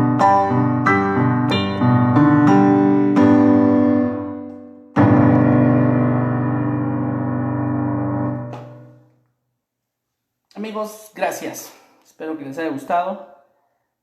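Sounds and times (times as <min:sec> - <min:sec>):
piano chords: 0:00.0 - 0:09.1.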